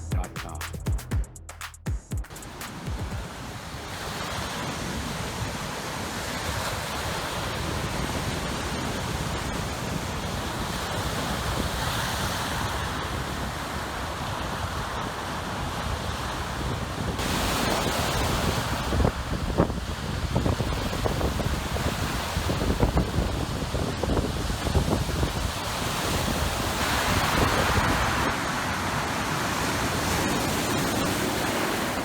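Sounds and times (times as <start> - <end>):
waves breaking on shore: 2.3 - 32.0
wind buffeting microphone: 3.2 - 31.1.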